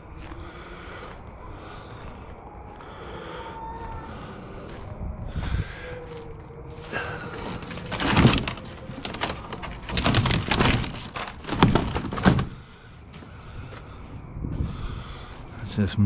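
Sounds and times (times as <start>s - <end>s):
wood snapping and clattering: 6.9s - 12.7s.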